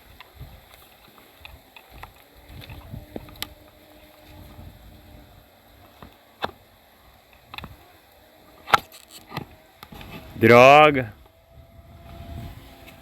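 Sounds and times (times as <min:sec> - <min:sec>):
wind buffeting microphone: 0:00.0 - 0:00.8, 0:01.4 - 0:06.1, 0:09.5 - 0:13.0.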